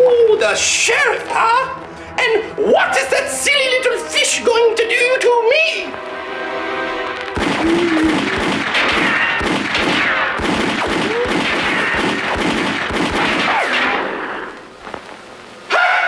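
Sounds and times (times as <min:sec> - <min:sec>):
held musical chord: 0:00.4 - 0:07.4
rapid gunshots: 0:07.4 - 0:14.5.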